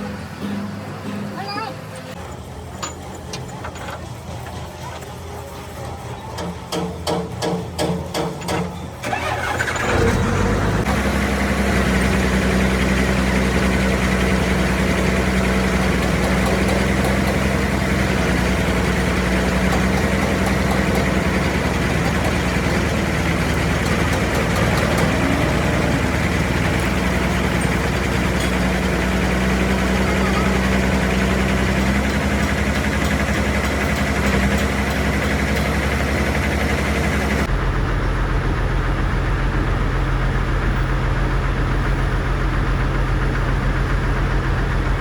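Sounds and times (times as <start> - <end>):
diesel engine cranking and idling: 0.0 - 45.0.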